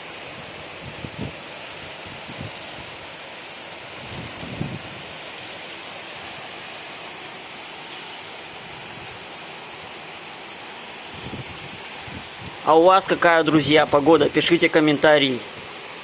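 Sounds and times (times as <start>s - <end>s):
heavy rain: 0.0s - 16.0s
wind buffeting microphone: 0.3s - 3.0s, 3.9s - 5.2s, 11.1s - 12.6s.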